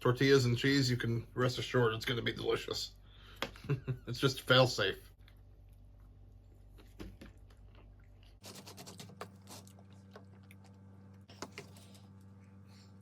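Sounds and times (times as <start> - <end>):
faint steady hum: 0.0 - 13.0
chewing crunches: 5.2 - 12.2.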